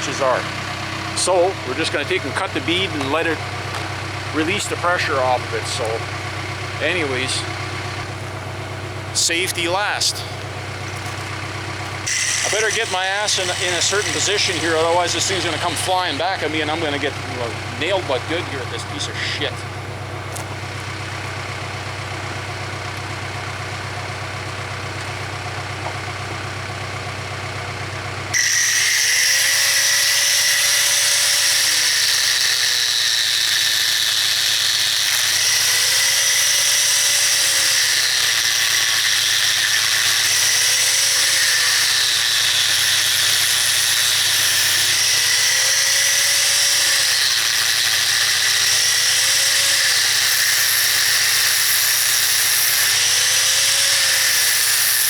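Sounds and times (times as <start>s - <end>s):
angle grinder squealing through wire: 0.0s - 8.1s, 12.0s - 19.7s, 28.3s - 55.0s
diesel engine idling: 0.0s - 28.6s, 31.3s - 52.1s.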